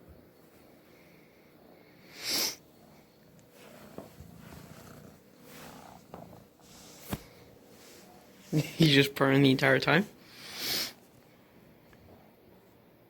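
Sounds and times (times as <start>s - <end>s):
kitten purring: 2.2s - 9.1s.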